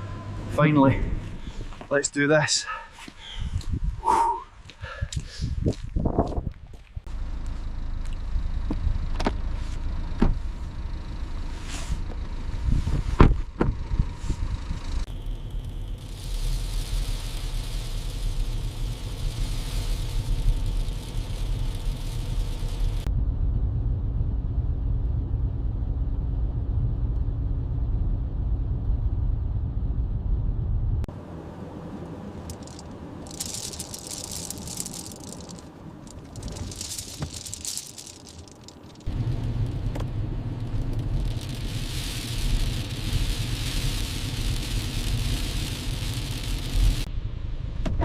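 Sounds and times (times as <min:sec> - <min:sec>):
car engine and tyres rumbling: 0:00.0 - 0:48.0
bursts of hiss: 0:15.1 - 0:23.1, 0:32.4 - 0:39.0.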